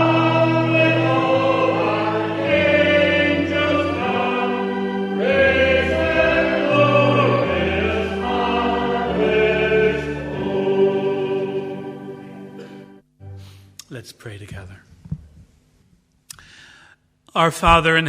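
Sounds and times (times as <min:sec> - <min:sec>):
congregation singing a hymn: 0:00.0 - 0:13.0
instrumental accompaniment: 0:00.0 - 0:13.8.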